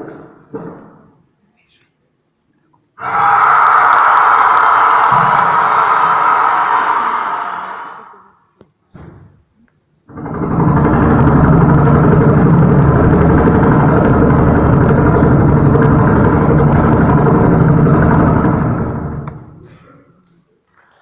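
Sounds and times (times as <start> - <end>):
vehicle engine running: 10.1 - 19.7.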